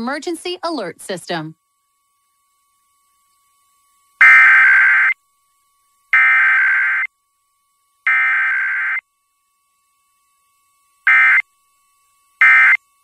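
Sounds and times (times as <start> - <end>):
two-tone digital data bursts: 4.2 - 5.2, 6.1 - 7.1, 8.0 - 9.0, 11.0 - 11.5, 12.4 - 12.8.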